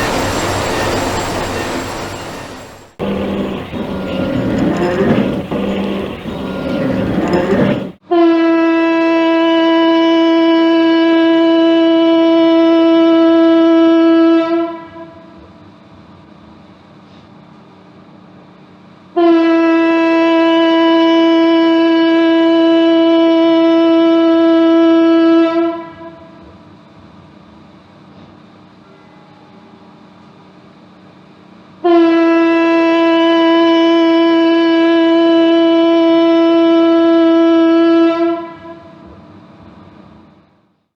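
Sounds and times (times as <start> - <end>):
factory siren blasts: 0.0 - 7.9
faint hum: 0.0 - 8.0
loud machinery noise: 0.0 - 8.0.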